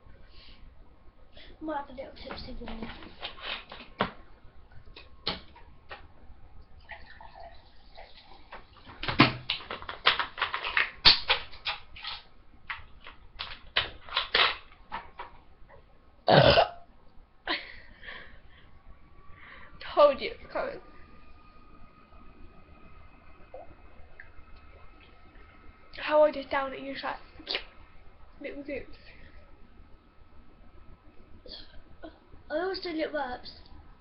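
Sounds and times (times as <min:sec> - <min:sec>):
loud burp: 0:16.3 - 0:16.9.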